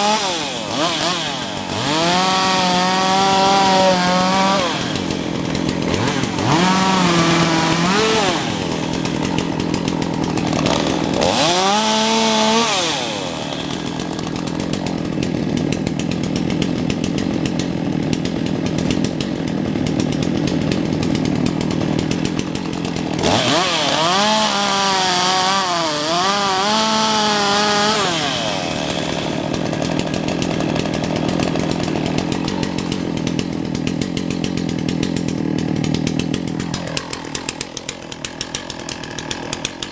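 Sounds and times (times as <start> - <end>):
chainsaw cutting a log: 0.0 - 39.9.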